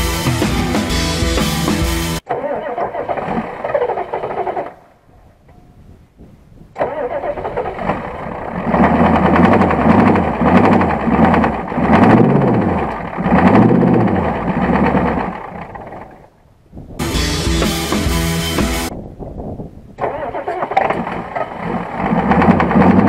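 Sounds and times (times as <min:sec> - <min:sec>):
diesel engine cranking: 0:00.0 - 0:05.6, 0:06.7 - 0:16.4, 0:20.0 - 0:23.0.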